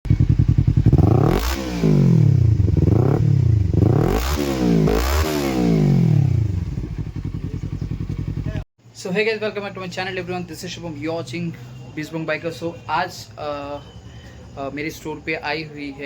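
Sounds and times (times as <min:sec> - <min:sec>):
motorcycle engine revving: 0:00.1 - 0:08.7.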